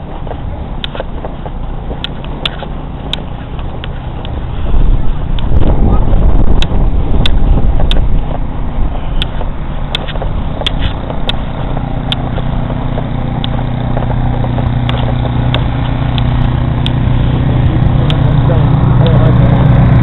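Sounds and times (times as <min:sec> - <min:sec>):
road noise rumbling: 0:00.0 - 0:20.0
vehicle engine humming: 0:00.0 - 0:20.0
sharp clicks: 0:00.2 - 0:04.4, 0:06.5 - 0:08.5, 0:09.2 - 0:17.1, 0:18.0 - 0:18.3.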